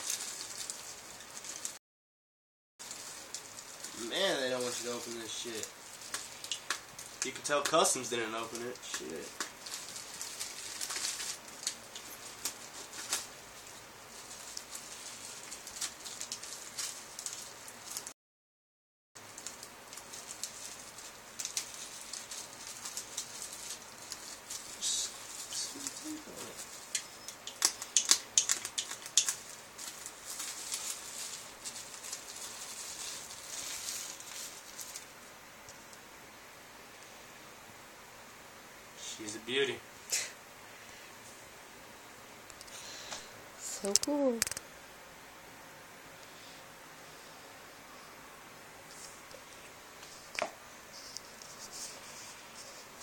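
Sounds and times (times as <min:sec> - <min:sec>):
packaging crinkling and rustling: 0:00.0 - 0:01.8, 0:02.8 - 0:18.1, 0:19.2 - 0:35.3
sharp clicks: 0:26.9 - 0:29.4, 0:43.9 - 0:44.6.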